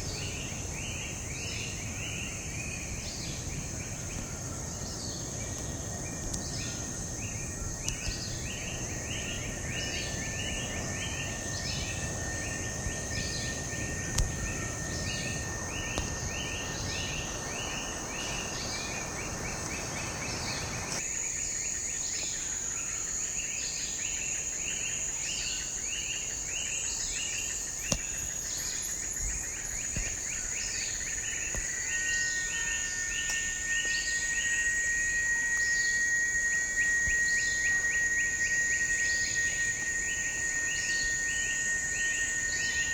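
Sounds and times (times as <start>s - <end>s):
low rushing background noise: 0.0s - 21.0s
pulsed insect chirring: 0.0s - 23.6s, 24.4s - 42.9s
insects whining: 0.0s - 42.9s
steady thin insect tone: 0.0s - 42.9s.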